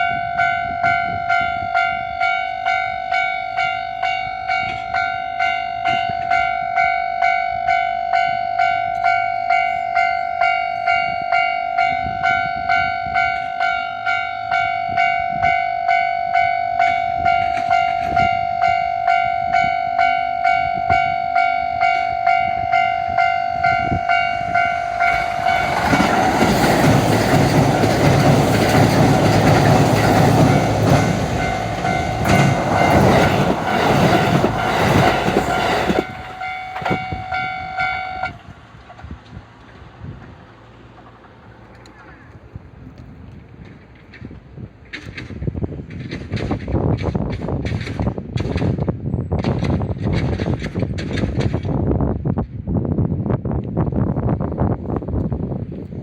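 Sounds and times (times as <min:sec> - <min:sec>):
level-crossing warning bell: 0:00.0 - 0:38.4
train running and wheel noise: 0:00.0 - 0:56.0.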